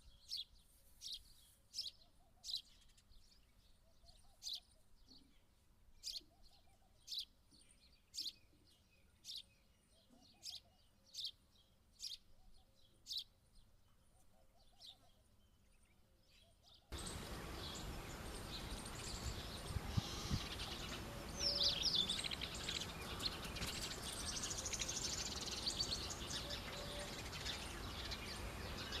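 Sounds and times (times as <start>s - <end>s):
sparrows chirping: 0.0s - 29.0s
steady background hiss: 16.9s - 29.0s.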